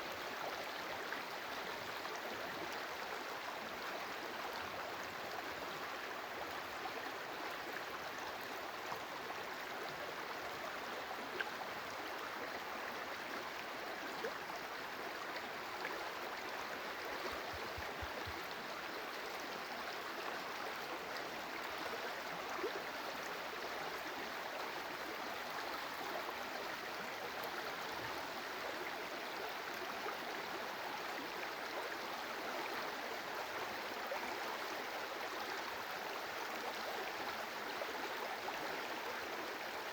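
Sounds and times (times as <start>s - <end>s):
faint ticks: 17.0s - 18.6s.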